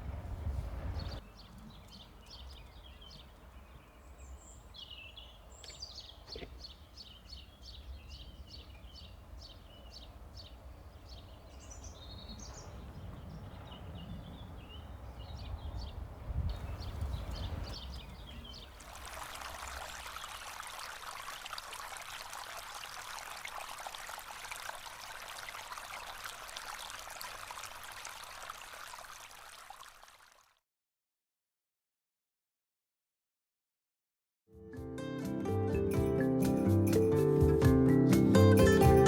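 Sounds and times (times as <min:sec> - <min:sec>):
low outdoor rumble: 0:00.0 - 0:04.1
small birds chirping: 0:00.4 - 0:20.5.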